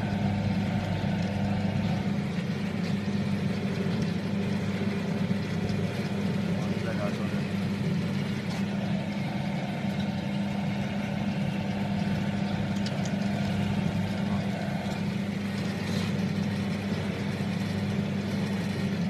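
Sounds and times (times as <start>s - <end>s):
machine motor hum: 0.0s - 19.0s.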